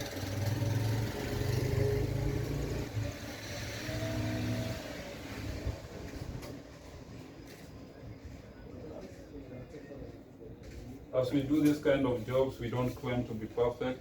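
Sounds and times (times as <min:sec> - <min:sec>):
vehicle engine passing by: 0:00.0 - 0:07.7.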